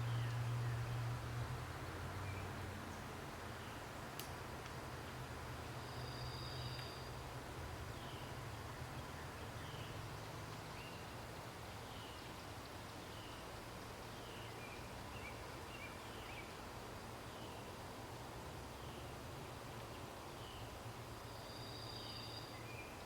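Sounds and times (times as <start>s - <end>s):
low hum and hiss: 0.0s - 23.0s
bird chirping: 7.9s - 13.5s, 14.1s - 16.6s, 19.8s - 23.0s.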